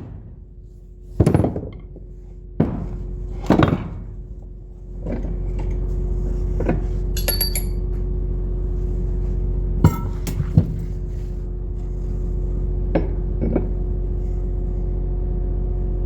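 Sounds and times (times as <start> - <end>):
steady machine hum: 0.0 - 16.0
metal tools clinking on metal: 7.1 - 7.9.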